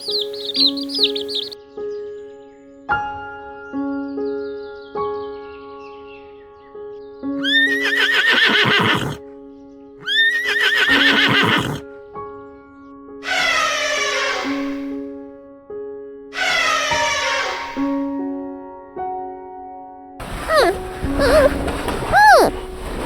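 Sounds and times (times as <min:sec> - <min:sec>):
gentle piano notes: 0:00.0 - 0:01.6
horse neighing: 0:00.0 - 0:01.6, 0:07.4 - 0:09.2, 0:10.0 - 0:11.8, 0:20.2 - 0:23.0
background music: 0:00.0 - 0:02.3
animal call falling in pitch: 0:20.4 - 0:22.7.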